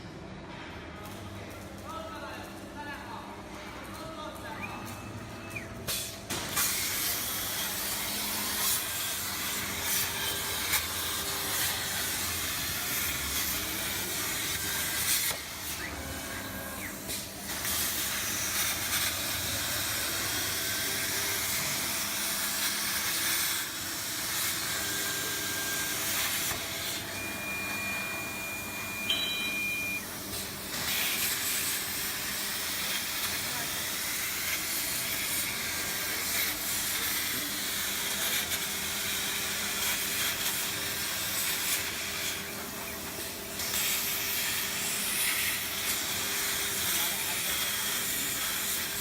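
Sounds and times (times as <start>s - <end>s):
plasma torch hissing: 5.8s - 27.2s, 30.2s - 49.0s
thin high tone: 27.1s - 30.0s.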